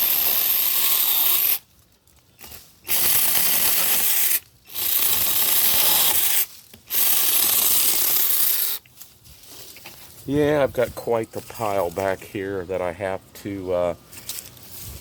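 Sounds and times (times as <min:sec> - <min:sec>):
mini chainsaw cutting branches: 0:00.0 - 0:01.7, 0:02.4 - 0:08.9.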